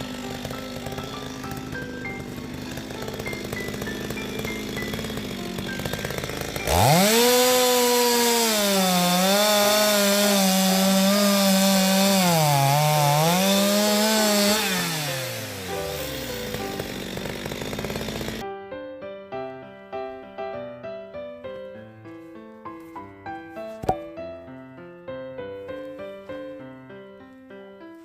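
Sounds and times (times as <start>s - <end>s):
chainsaw engine revving: 0.0s - 18.4s
piano music: 0.0s - 28.0s.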